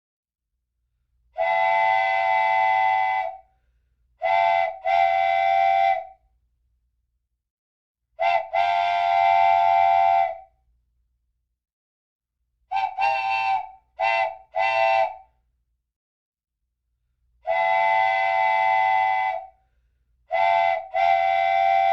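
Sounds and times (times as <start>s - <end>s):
train whistle blasts: 1.4s - 3.5s, 4.2s - 6.2s, 8.2s - 10.5s, 12.7s - 15.3s, 17.4s - 19.6s, 20.3s - 21.9s.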